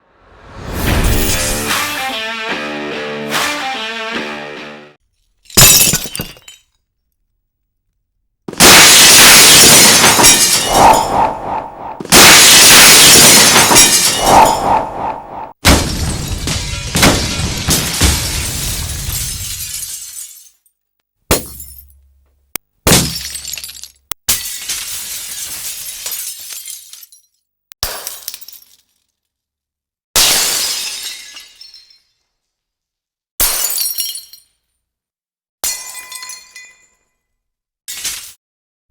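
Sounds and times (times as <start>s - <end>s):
glass shattering: 5.4s - 6.8s, 8.6s - 11.1s, 12.1s - 14.6s, 15.7s - 22.0s, 22.9s - 29.0s, 30.2s - 32.2s, 33.4s - 34.5s
tinkling glass shards: 19.3s - 20.8s, 23.6s - 27.4s.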